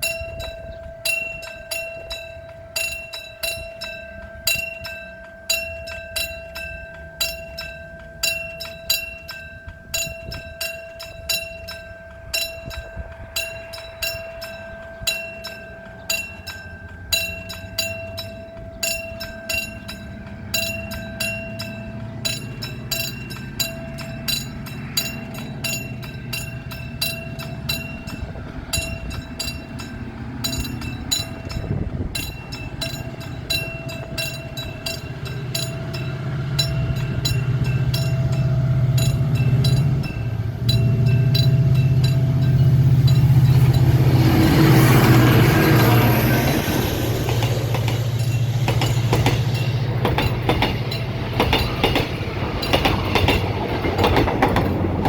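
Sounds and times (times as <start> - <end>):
level crossing warning bell: 0.0 - 55.0
passenger train rumble: 0.0 - 55.0.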